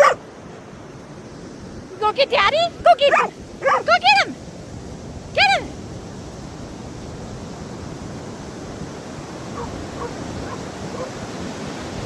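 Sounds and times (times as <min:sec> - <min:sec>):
ocean surf on a beach: 0:00.0 - 0:12.0
wind: 0:00.0 - 0:12.0.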